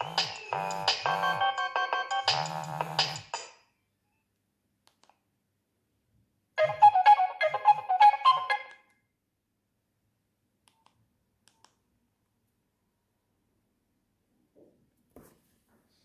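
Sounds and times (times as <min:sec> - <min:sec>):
mobile phone ringtone: 0:00.0 - 0:03.1.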